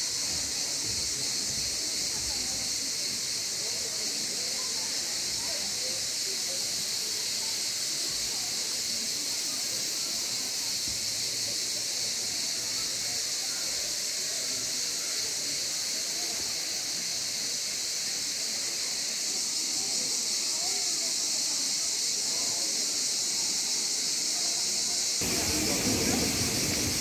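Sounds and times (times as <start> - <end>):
waterfall running: 25.2 - 27.0.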